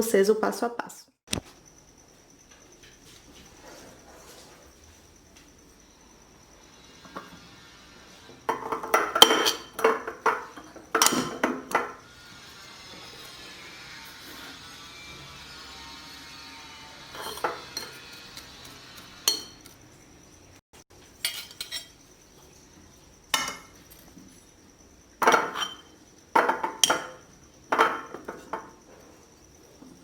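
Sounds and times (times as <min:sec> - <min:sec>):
clinks and knocks against a jar: 0:08.5 - 0:12.0, 0:25.2 - 0:28.8.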